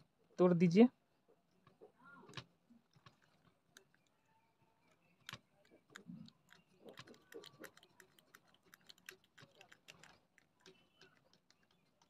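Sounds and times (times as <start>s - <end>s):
small clicks of metal legs snapping: 4.8s - 12.0s.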